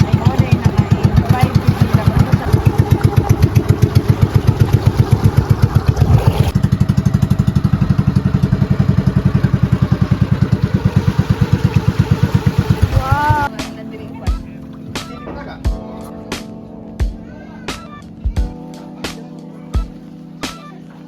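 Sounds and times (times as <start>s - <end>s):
small engine running: 0.0s - 13.5s.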